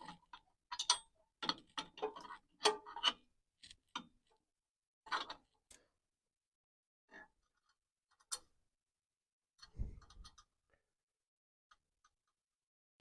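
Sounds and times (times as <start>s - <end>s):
metal clicks of washers and nuts: 8.1s - 8.5s.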